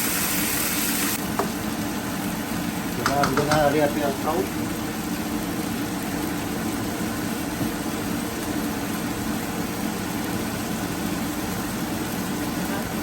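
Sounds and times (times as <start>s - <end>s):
even hiss: 3.0s - 4.6s.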